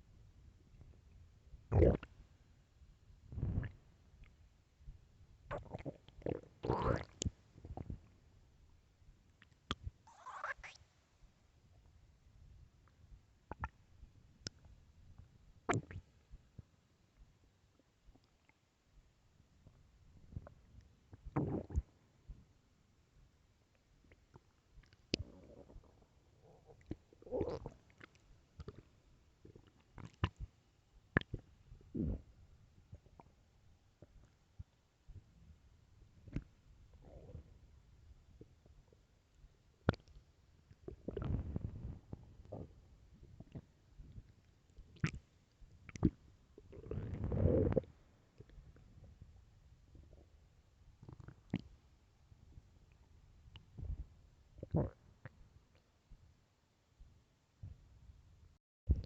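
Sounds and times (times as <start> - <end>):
stomach gurgle: 0.7 - 2.2, 3.2 - 4.4, 5.4 - 8.2, 9.4 - 10.9, 12.8 - 18.8, 19.6 - 22.6, 23.7 - 56.3
stomach growling: 1.6 - 2.2, 3.3 - 3.9, 5.5 - 8.1, 9.4 - 10.8, 13.5 - 13.8, 15.7 - 16.6, 19.6 - 22.0, 24.1 - 30.6, 31.2 - 33.4, 36.2 - 37.6, 39.8 - 50.3, 51.0 - 51.8, 53.5 - 55.8.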